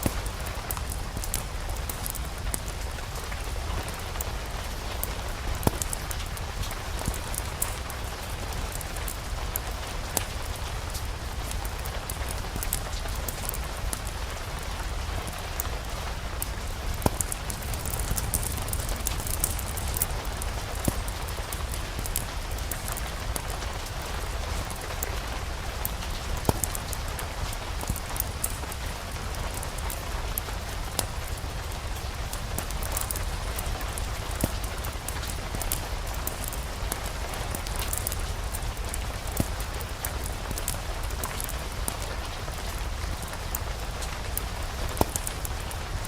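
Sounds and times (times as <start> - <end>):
fire crackling and popping: 0.0 - 46.0
steady rain falling: 0.0 - 46.0.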